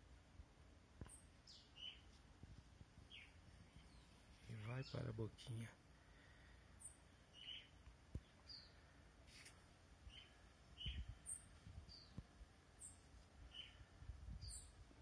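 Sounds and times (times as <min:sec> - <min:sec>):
bird chick chirping: 0:06.8 - 0:08.8, 0:10.1 - 0:12.2, 0:12.8 - 0:13.8.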